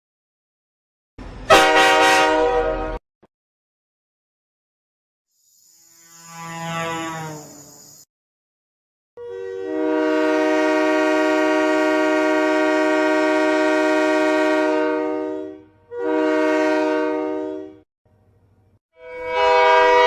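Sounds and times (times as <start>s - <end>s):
train horn chord: 1.5s - 3.0s, 9.2s - 17.8s, 19.0s - 20.0s.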